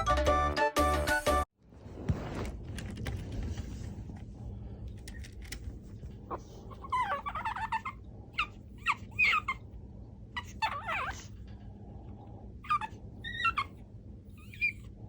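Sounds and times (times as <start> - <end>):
puppy whimpering: 6.3 - 9.7, 10.4 - 11.4, 12.6 - 14.9.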